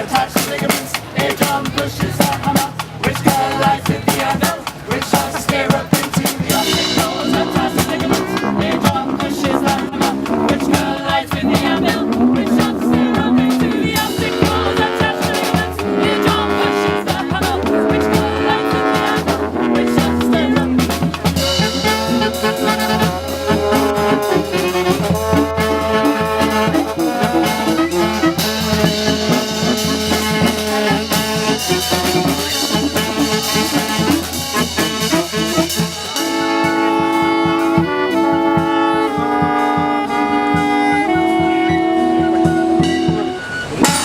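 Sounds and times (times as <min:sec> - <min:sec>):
drums: 0:00.0 - 0:44.0
horns holding chords: 0:00.0 - 0:44.0
low bass line: 0:05.1 - 0:14.9.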